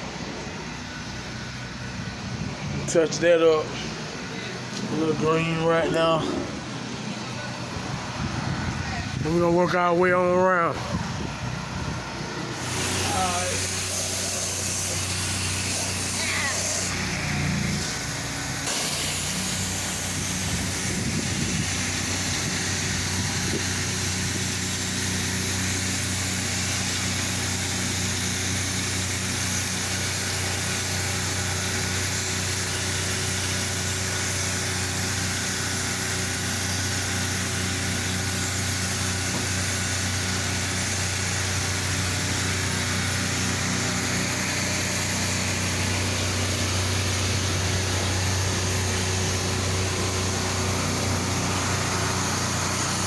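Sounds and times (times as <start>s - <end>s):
small engine running: 0.0s - 53.0s
even hiss: 12.6s - 17.0s.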